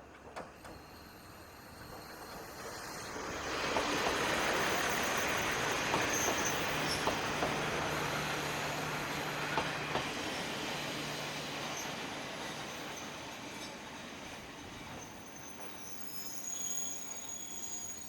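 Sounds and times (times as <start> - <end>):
diesel railcar engine hum: 0.0 - 18.0
train wheel noise: 0.0 - 18.0
high wheel squeal: 0.7 - 18.0
wheels clicking over rail joints: 1.8 - 10.2.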